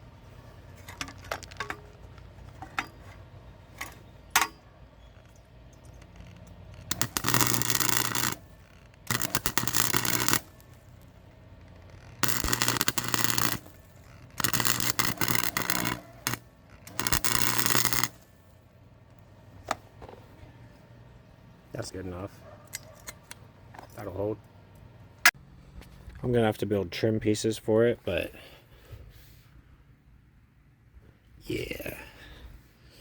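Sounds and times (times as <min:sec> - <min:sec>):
steady welder hum: 0:00.0 - 0:22.3
welding arc crackling: 0:05.1 - 0:18.5.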